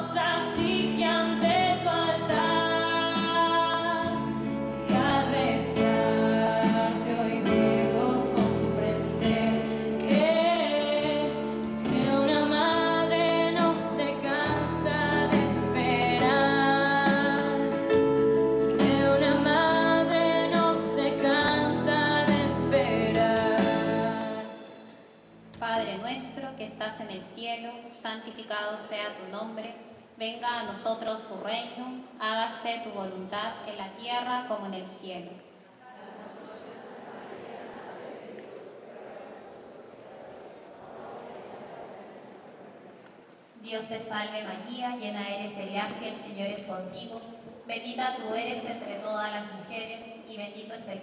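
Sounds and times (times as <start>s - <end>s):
song with singing voice: 0.0s - 25.3s.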